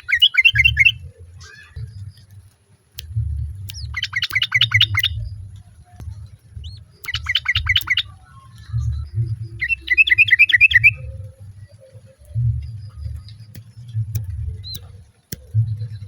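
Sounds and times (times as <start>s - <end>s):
bird chattering calls: 0.0s - 2.3s, 3.7s - 5.2s, 6.6s - 8.2s, 9.5s - 12.2s.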